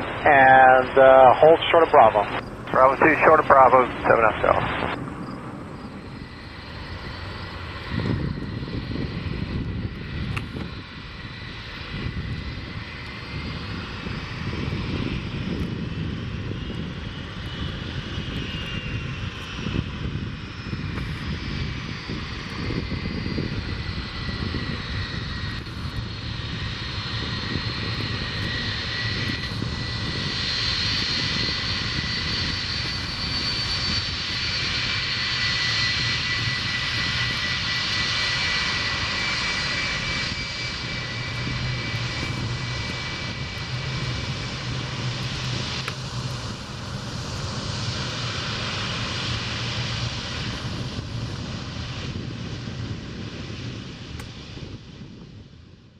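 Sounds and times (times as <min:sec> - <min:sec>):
jet engine rumble and whine: 0:00.0 - 0:55.9.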